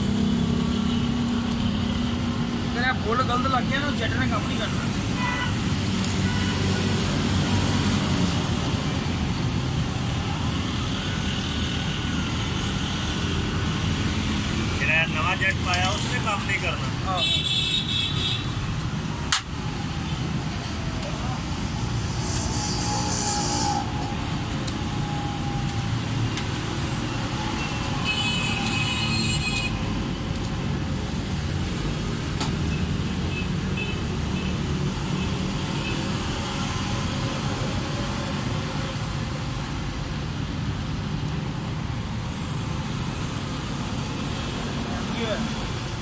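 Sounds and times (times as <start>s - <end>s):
brief high hiss: 22.0s - 24.0s.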